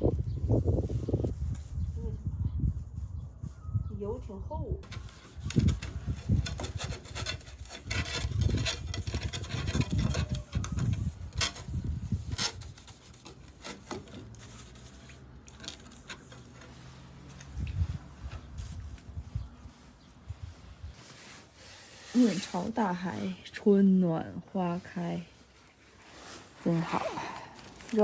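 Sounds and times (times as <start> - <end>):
pot being scrubbed: 21.2 - 23.3.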